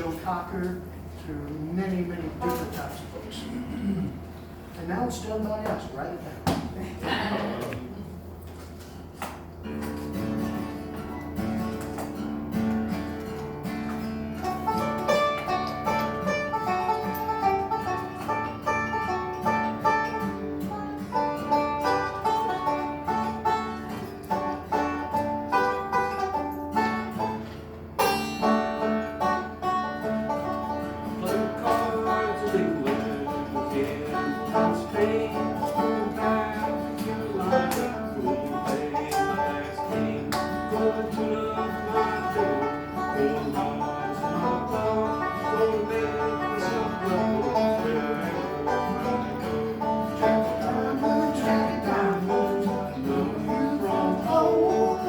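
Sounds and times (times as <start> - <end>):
bluegrass band playing: 0.0 - 3.6, 9.6 - 55.0
picked string instruments: 9.8 - 55.0.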